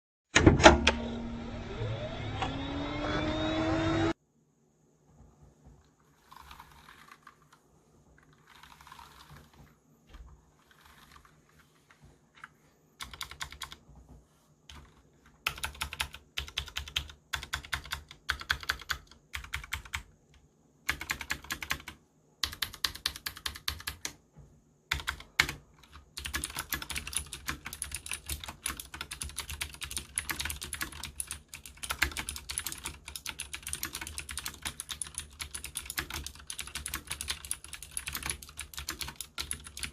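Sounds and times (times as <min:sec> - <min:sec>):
clicky mechanical keyboard typing: 0:06.2 - 0:07.6, 0:08.2 - 0:09.7, 0:10.6 - 0:11.7, 0:12.4 - 0:13.8, 0:14.7 - 0:20.1, 0:20.9 - 0:24.2, 0:24.9 - 0:39.9.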